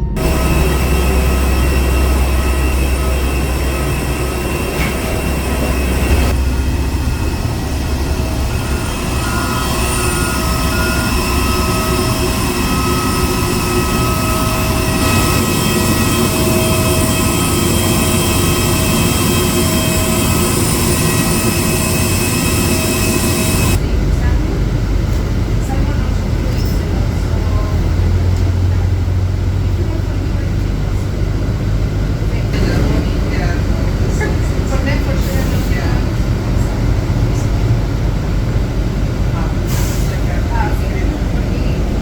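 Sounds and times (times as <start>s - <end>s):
steady whining tones: 0.0s - 26.8s
low engine rumble: 0.0s - 42.0s.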